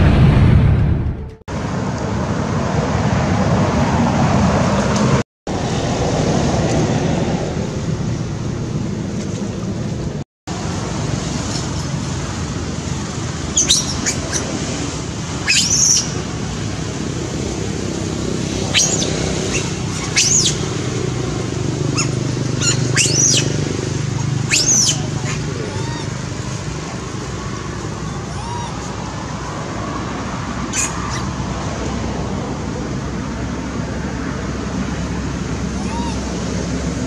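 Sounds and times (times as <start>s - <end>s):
high-pitched chirping calls: 13.5s - 14.6s, 15.4s - 16.2s, 18.6s - 20.8s, 21.9s - 26.6s, 27.8s - 29.2s, 30.7s - 31.3s, 35.7s - 36.3s.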